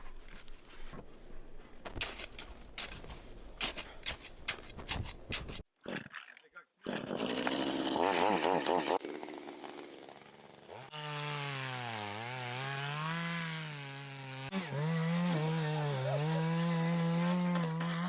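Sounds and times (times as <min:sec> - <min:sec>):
chainsaw cutting wood: 0:07.0 - 0:18.0.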